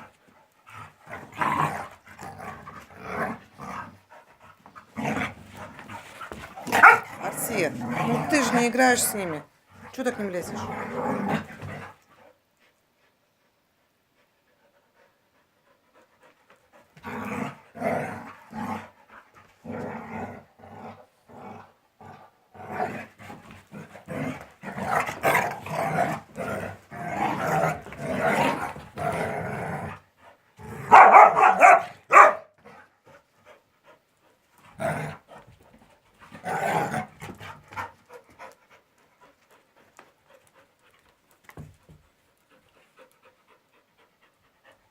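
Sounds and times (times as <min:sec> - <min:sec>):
dogs growling: 0:00.0 - 0:12.3, 0:16.2 - 0:34.0, 0:34.6 - 0:41.1
dogs panting: 0:03.6 - 0:07.7, 0:11.4 - 0:17.1, 0:30.1 - 0:44.9.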